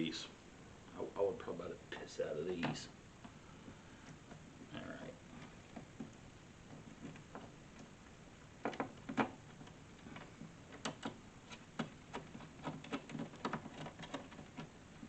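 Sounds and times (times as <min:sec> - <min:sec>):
hinge hardware clicks and knocks: 0:08.6 - 0:15.0.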